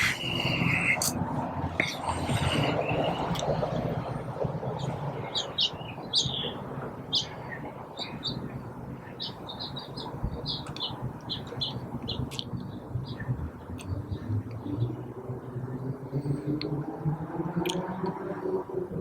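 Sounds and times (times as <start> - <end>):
small birds chirping: 0.0 - 1.2, 1.8 - 3.6, 4.7 - 15.0.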